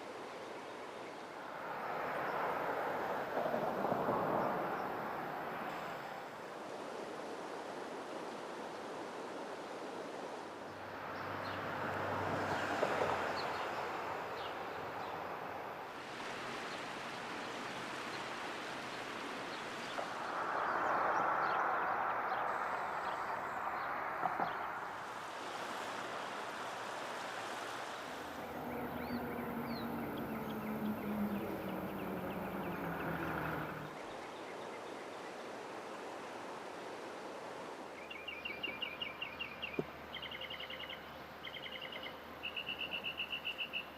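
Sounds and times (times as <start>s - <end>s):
engine running: 28.4s - 33.9s
birds chirping in trills: 28.4s - 34.3s.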